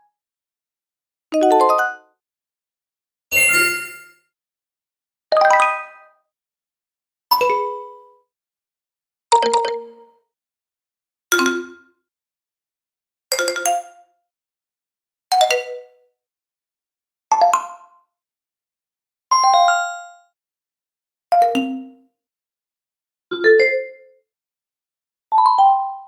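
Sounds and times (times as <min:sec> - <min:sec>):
bell-like chime effects: 0:03.4 - 0:04.1.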